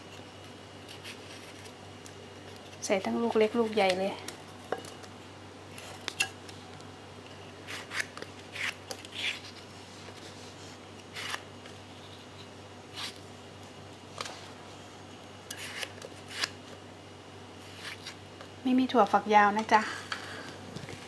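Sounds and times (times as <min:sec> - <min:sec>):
knife cutting tomatoes: 0:07.6 - 0:09.6, 0:15.5 - 0:16.6.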